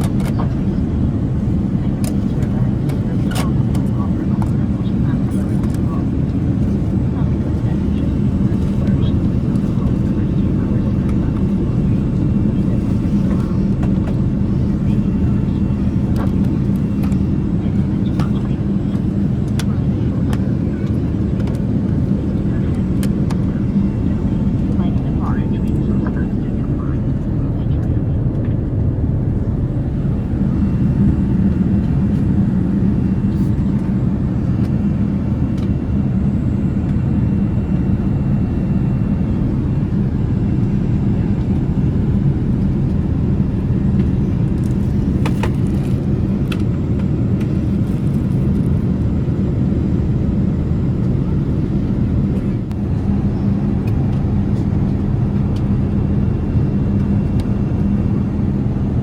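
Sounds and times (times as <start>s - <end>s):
airliner cabin engine rumble: 0.0s - 59.0s
constant hum: 0.0s - 59.0s.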